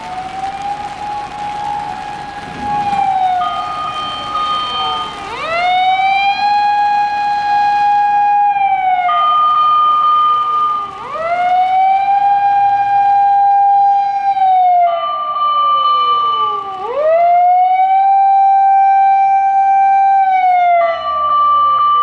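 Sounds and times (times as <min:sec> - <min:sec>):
emergency vehicle siren: 0:00.0 - 0:22.0
steady higher siren tone: 0:00.0 - 0:22.0.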